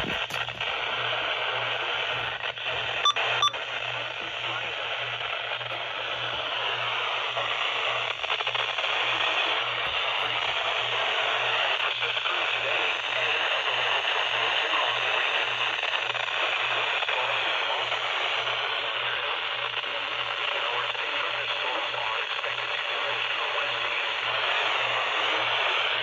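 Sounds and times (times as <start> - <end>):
low pulsing hum: 0.0 - 5.1
radio static hiss: 0.0 - 26.0.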